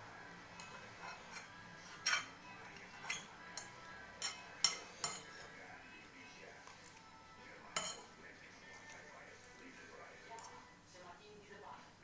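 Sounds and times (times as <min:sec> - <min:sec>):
utensils clinking against a bowl: 0:00.5 - 0:05.7, 0:07.6 - 0:09.6, 0:10.2 - 0:10.7.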